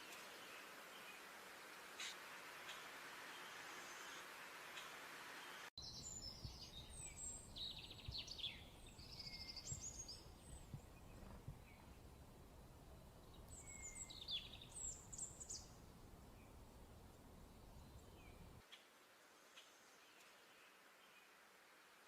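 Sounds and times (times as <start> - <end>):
faint background hiss: 0.0 - 22.0
songbird twittering and trilling: 2.0 - 16.6, 17.3 - 18.6.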